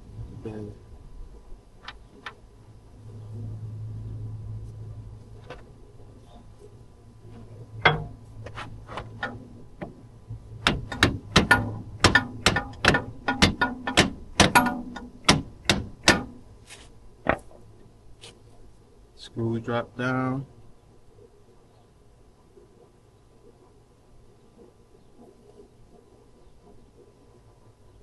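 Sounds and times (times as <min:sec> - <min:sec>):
hammer striking metal: 0:07.8 - 0:08.2, 0:10.6 - 0:16.4.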